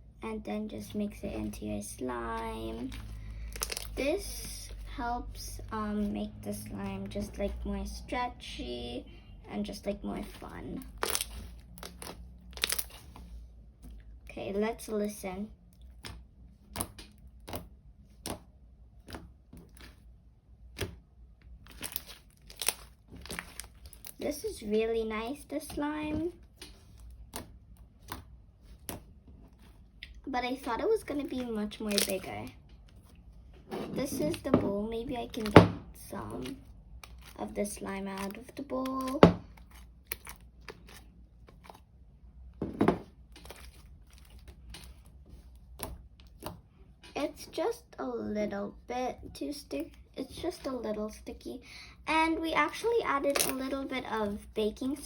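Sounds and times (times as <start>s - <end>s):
sticky slime clicks and crackles: 2.9s - 4.0s, 10.8s - 13.0s, 21.6s - 24.2s, 31.2s - 32.3s, 36.3s - 41.8s, 53.3s - 53.7s.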